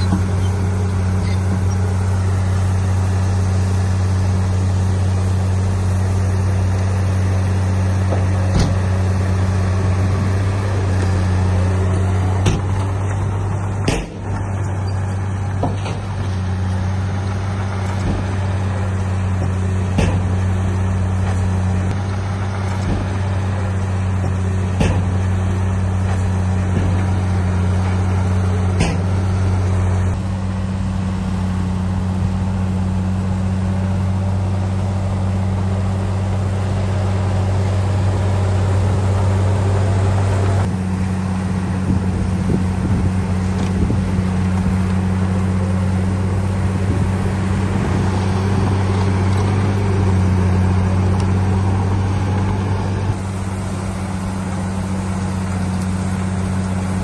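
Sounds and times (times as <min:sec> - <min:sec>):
heavy diesel engine droning: 0:00.0 - 0:57.0
sharp metallic knocks: 0:19.4 - 0:20.4, 0:24.8 - 0:25.2, 0:28.7 - 0:29.2.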